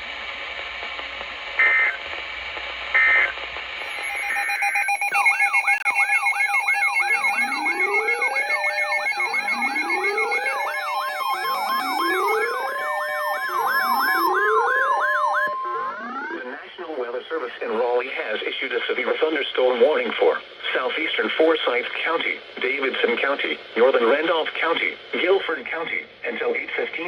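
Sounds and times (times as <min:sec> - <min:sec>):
electronic data bursts: 0:03.0 - 0:17.2
wailing sirens: 0:03.8 - 0:16.8
yelping electronic sirens: 0:03.8 - 0:16.9
steady high tones: 0:03.8 - 0:17.7.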